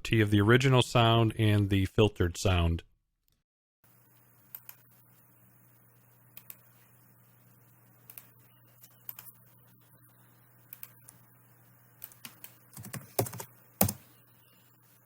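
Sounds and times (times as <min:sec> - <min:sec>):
computer keyboard and mouse clicks: 0:12.0 - 0:14.0.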